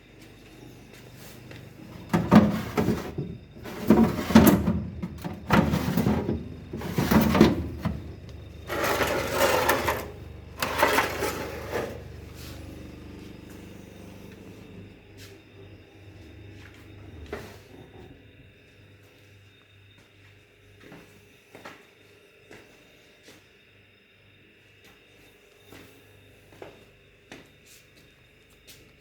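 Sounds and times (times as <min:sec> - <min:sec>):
refrigerator low hum: 0:00.0 - 0:29.0
refrigerator noisy bursts: 0:01.2 - 0:18.3.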